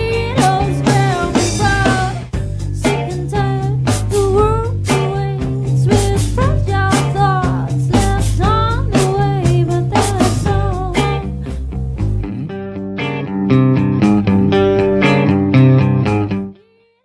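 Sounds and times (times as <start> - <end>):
rock song with singing: 0.0 - 12.2.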